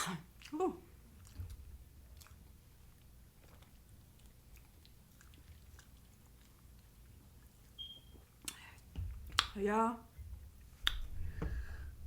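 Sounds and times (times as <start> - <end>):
low steady hum: 0.0 - 12.0
person chewing food: 0.3 - 9.5.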